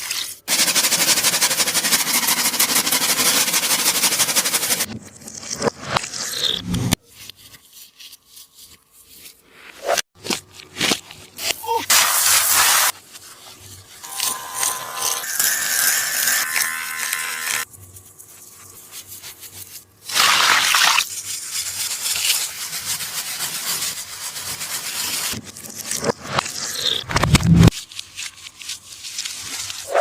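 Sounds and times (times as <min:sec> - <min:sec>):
tape squishy crinkling and scraping: 0:07.0 - 0:12.0, 0:12.9 - 0:15.1.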